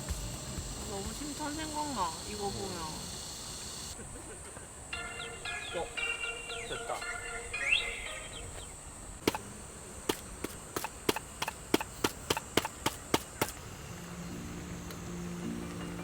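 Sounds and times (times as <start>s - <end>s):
sharp wooden knocks: 9.2s - 9.5s, 10.1s - 13.6s.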